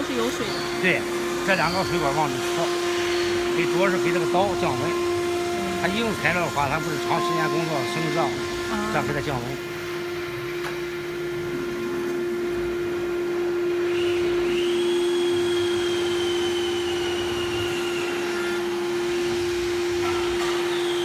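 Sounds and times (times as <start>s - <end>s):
high squeal of bit cutting: 0.0s - 9.7s, 13.9s - 21.0s
router spindle whine: 0.0s - 21.0s.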